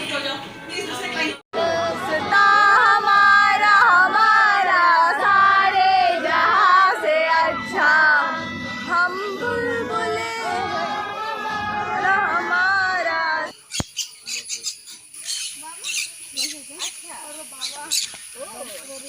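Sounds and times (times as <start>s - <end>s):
music with high singing voice: 1.6s - 13.6s.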